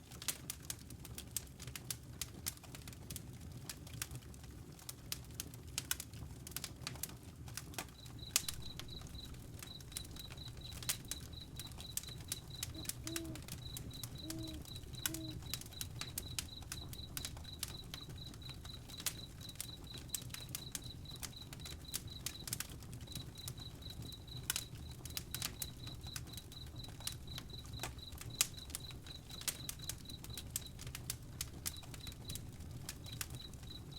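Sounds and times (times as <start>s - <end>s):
campfire crackling and popping: 0.0s - 33.9s
low rumble of flame: 0.0s - 33.9s
high rapid chirp: 8.0s - 20.0s.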